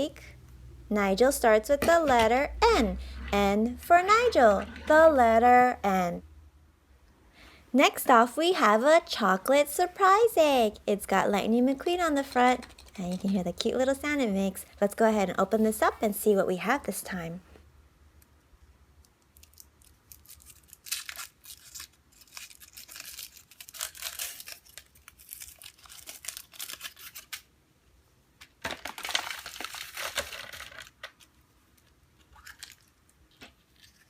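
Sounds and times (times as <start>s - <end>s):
foil wrapper crinkling and tearing: 12.2s - 13.6s, 19.3s - 27.5s, 28.5s - 34.0s.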